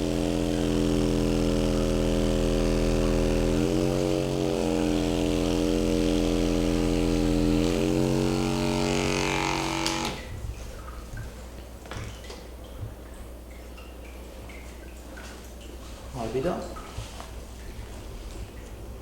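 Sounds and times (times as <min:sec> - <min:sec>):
electric motor humming: 0:00.0 - 0:10.4.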